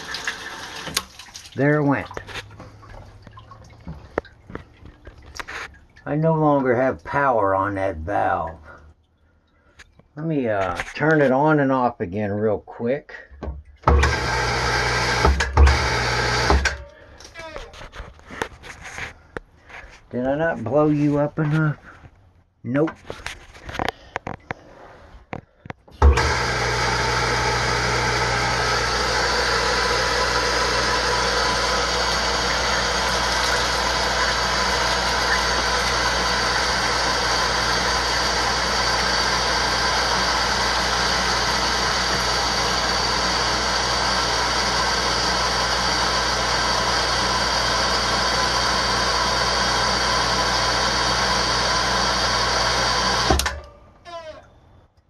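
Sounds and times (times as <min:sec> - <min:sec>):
water rushing through pipes: 0:00.0 - 0:10.1, 0:13.6 - 0:17.3, 0:26.0 - 0:53.6
well pump electric hum: 0:00.0 - 0:11.5, 0:13.2 - 0:22.2, 0:22.9 - 0:55.0.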